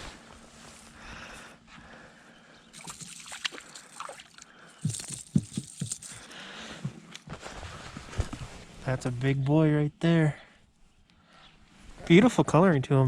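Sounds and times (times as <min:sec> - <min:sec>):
water sloshing and trickling: 0:02.7 - 0:06.3.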